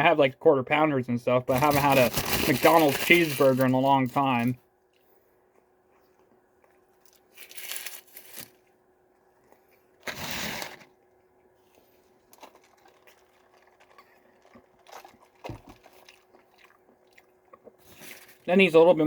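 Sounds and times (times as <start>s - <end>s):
paper wrapper crinkling: 1.5s - 4.6s, 7.0s - 8.6s, 12.3s - 16.2s, 17.9s - 18.5s.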